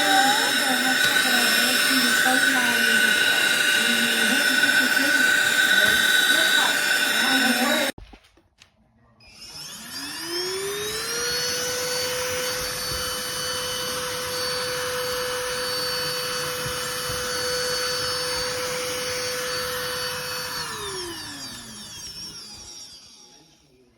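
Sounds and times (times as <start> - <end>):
handheld vacuum cleaner running: 0.0 - 8.0, 9.2 - 23.9.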